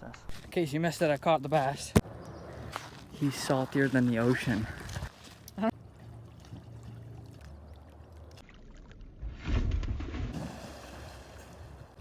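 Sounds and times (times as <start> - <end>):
water churning: 3.2 - 12.0
person splashing into water: 8.8 - 11.8.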